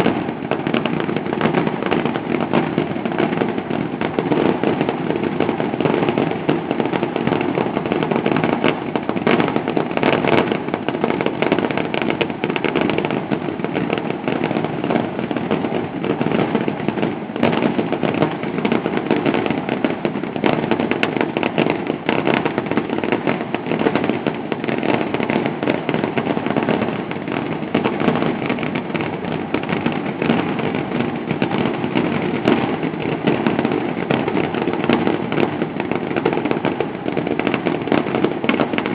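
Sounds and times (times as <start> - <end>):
fireworks bursts and crackles: 0.0 - 38.9.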